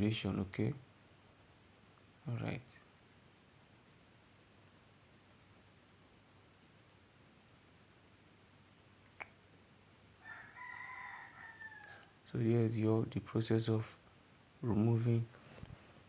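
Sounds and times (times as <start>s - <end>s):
crickets chirping: 0.0s - 16.0s
rooster crowing: 10.2s - 12.2s.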